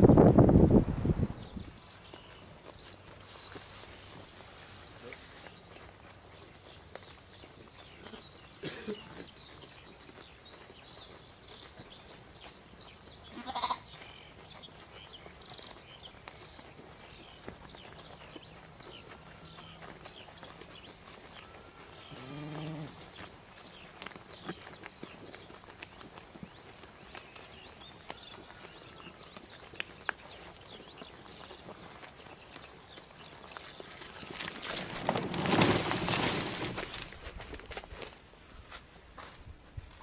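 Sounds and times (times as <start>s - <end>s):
small birds chirping: 0.1s - 37.2s
livestock bleating: 13.3s - 13.8s, 21.4s - 23.0s.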